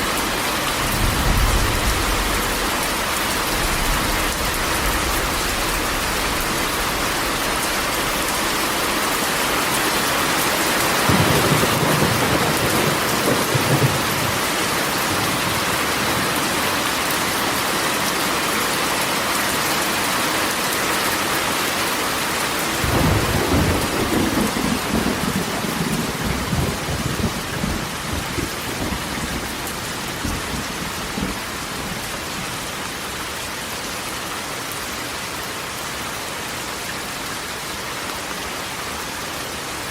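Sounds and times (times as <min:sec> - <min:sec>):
rain on a metal roof: 0:00.0 - 0:39.9
thunder rolling: 0:00.3 - 0:09.6, 0:22.8 - 0:31.5.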